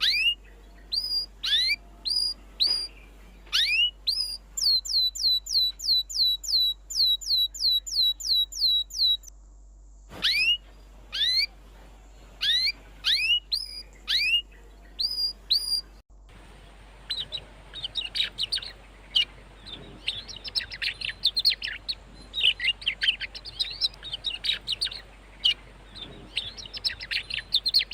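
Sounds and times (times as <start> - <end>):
birds twittering together: 0.0 - 9.3, 10.1 - 27.9
canaries calling and singing: 0.0 - 9.3, 10.1 - 27.9.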